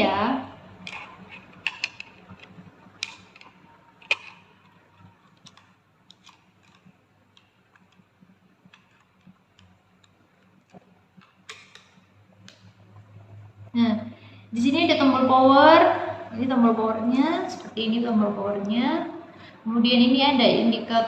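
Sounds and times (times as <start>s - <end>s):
sharp plastic clicks: 0.8s - 8.1s, 8.7s - 12.7s.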